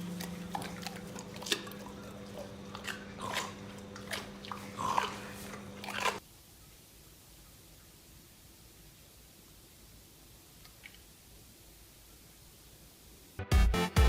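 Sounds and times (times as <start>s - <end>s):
crunching chewing: 0.0s - 6.2s
steady low hum: 0.0s - 13.4s.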